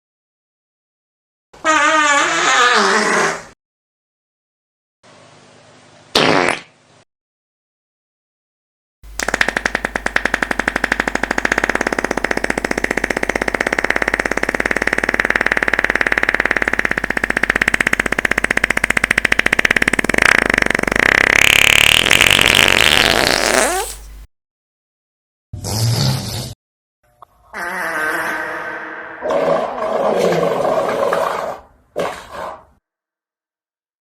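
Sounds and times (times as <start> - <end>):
long buzzing fart: 1.6 - 3.6, 6.1 - 6.8, 9.1 - 24.0, 27.5 - 29.5.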